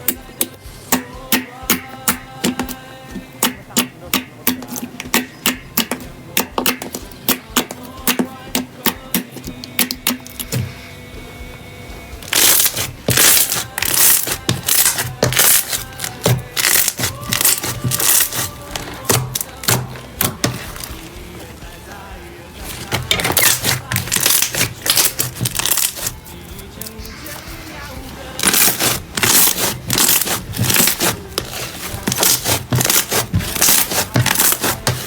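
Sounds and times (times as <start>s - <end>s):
faint background music: 0.0s - 35.0s
slime clicking and popping: 3.4s - 10.6s, 12.3s - 20.9s, 22.9s - 26.2s
slime crackling crunches: 12.2s - 21.1s, 22.6s - 26.2s, 28.4s - 35.0s.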